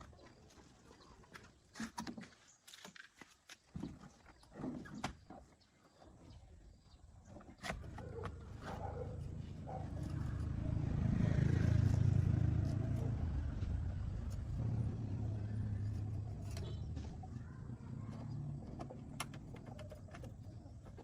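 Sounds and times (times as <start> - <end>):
low engine rumble: 8.1 - 21.0.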